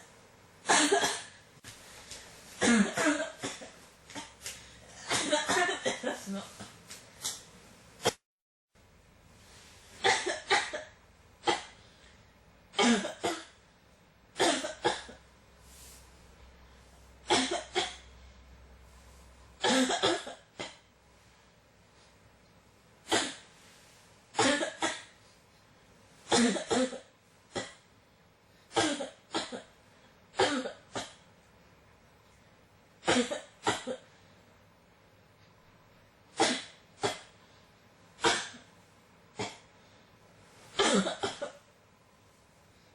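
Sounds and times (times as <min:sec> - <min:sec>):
person coughing: 0:00.7 - 0:01.4, 0:02.6 - 0:04.4, 0:05.0 - 0:06.7, 0:10.0 - 0:11.8, 0:12.8 - 0:13.6, 0:14.4 - 0:15.2, 0:19.6 - 0:20.8, 0:24.4 - 0:25.2, 0:26.3 - 0:27.8, 0:28.7 - 0:29.7, 0:30.4 - 0:31.2, 0:33.0 - 0:34.1, 0:38.2 - 0:38.7, 0:40.8 - 0:41.6.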